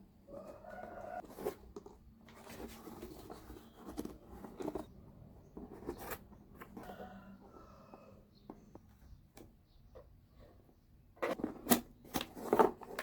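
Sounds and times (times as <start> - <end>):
cardboard scraping and rustling: 0.3 - 7.8, 11.2 - 13.0.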